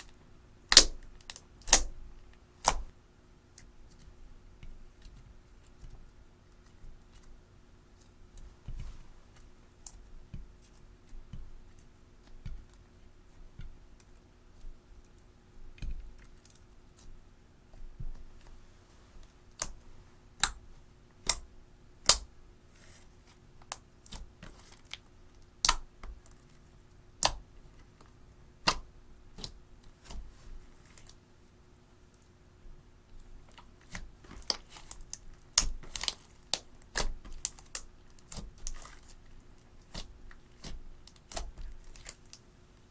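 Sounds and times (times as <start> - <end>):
slime clicking and popping: 0.7 - 2.0, 21.2 - 22.3, 25.6 - 26.2, 33.8 - 39.1.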